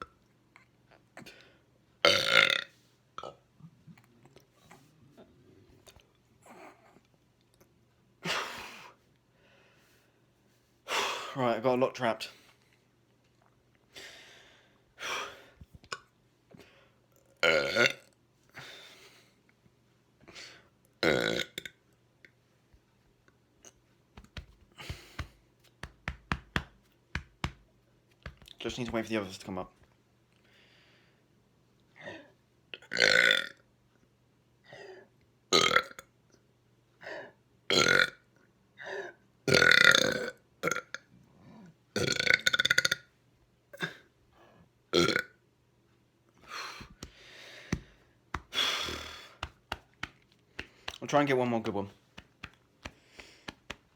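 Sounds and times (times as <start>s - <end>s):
man belching: 2.0s - 3.4s, 17.4s - 18.1s, 21.0s - 21.7s, 32.8s - 33.5s, 37.7s - 38.2s, 39.5s - 41.0s, 42.0s - 43.0s, 45.0s - 45.3s
person burping: 2.0s - 3.4s, 17.4s - 18.1s, 21.0s - 21.8s, 32.8s - 33.6s, 35.6s - 36.0s, 37.7s - 38.2s, 39.5s - 41.0s, 42.0s - 43.1s, 45.0s - 45.4s
soft breaths: 24.5s - 25.5s, 46.4s - 51.0s, 51.9s - 53.9s.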